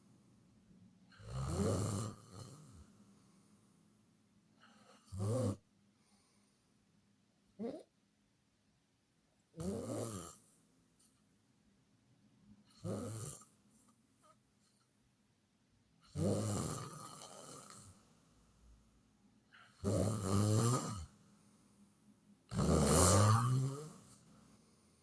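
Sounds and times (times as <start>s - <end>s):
snoring: 1.1s - 3.0s, 4.6s - 5.6s, 7.6s - 7.9s, 9.5s - 10.5s, 12.7s - 13.5s, 16.1s - 18.1s, 19.6s - 21.2s, 22.5s - 24.4s.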